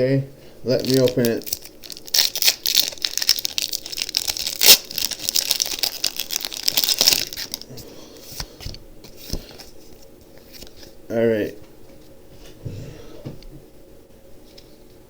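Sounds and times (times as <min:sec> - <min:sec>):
foil wrapper tearing and crinkling: 0:00.7 - 0:07.7
loud rip: 0:04.0 - 0:06.0.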